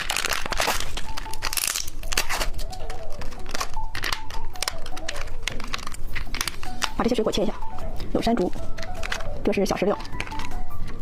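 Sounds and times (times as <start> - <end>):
plastic packaging crinkling and tearing: 0.0 - 7.0.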